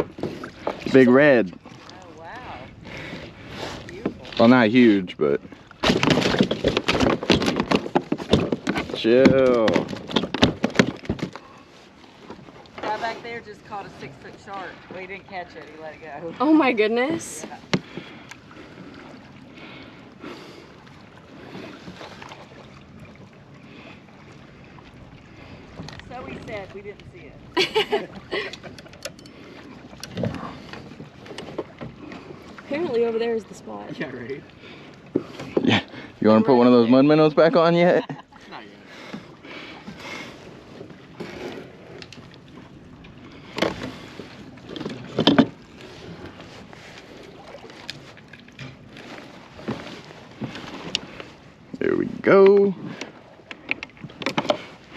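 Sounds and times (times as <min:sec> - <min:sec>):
water lapping: 0:00.0 - 0:54.9
small splashes around kayak: 0:05.4 - 0:28.8, 0:38.3 - 0:51.8
knocks on kayak: 0:05.8 - 0:11.4.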